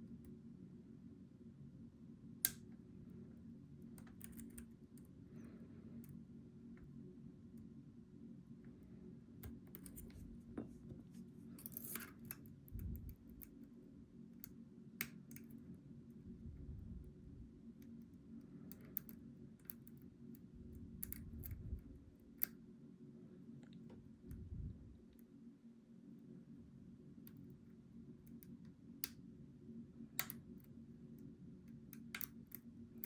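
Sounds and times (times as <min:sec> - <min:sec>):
steady low hum: 0:00.0 - 0:33.0
lock picks clicking and scraping: 0:04.0 - 0:04.7, 0:09.4 - 0:10.2, 0:11.5 - 0:13.6.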